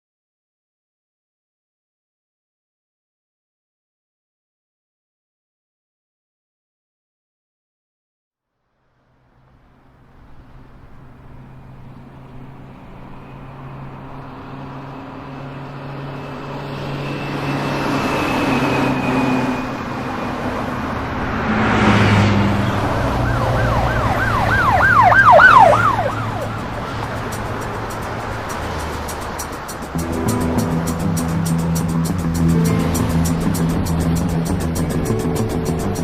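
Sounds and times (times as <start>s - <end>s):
steady low drones: 9.9s - 36.0s
warbling siren-like wail: 11.4s - 34.4s.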